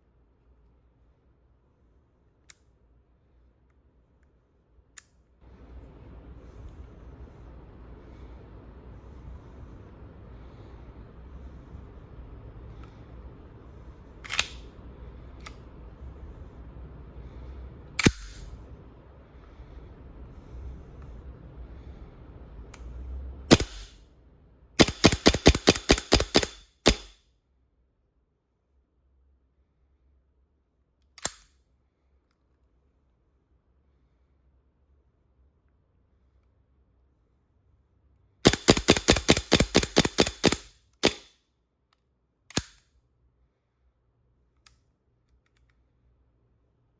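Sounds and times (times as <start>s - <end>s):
airsoft pistol shots: 23.5s - 24.0s, 24.8s - 27.1s, 38.4s - 41.3s
faint click: 44.5s - 45.8s.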